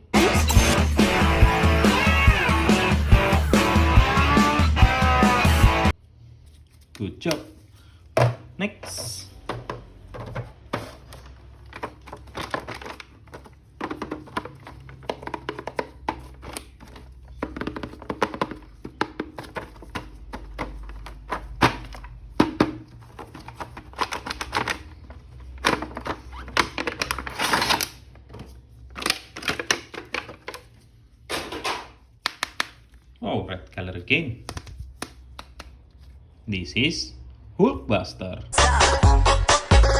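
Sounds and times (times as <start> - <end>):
plastic packaging rustling: 8.9 - 33.1
plastic toy clicks and taps: 32.2 - 32.8.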